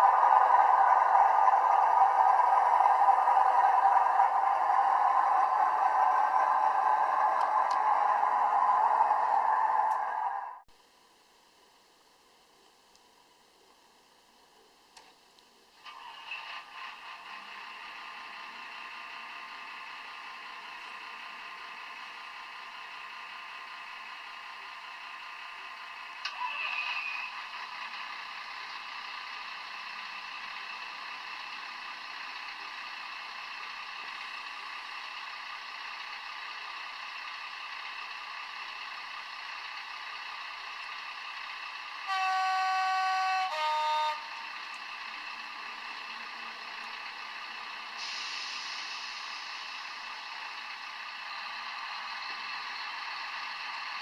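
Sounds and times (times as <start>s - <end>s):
diesel engine sound from small speaker: 0.0s - 10.7s, 15.7s - 54.0s
two-tone horn: 42.0s - 44.6s.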